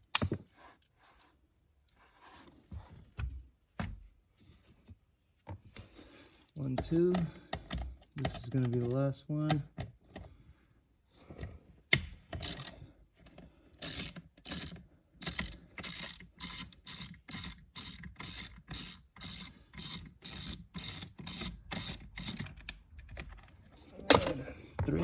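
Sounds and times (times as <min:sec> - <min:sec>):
ratchet wrench ratcheting: 0:12.4 - 0:12.8, 0:13.8 - 0:22.6.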